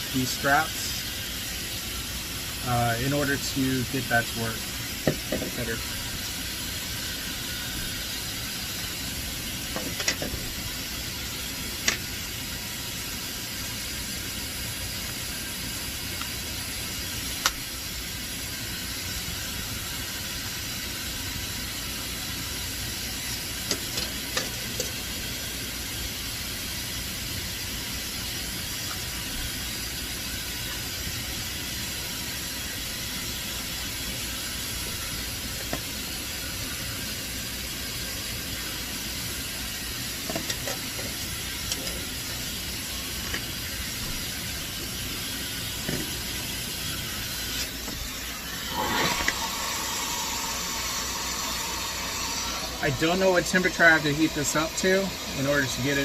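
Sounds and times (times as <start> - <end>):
hair dryer blowing: 45.8 - 56.0.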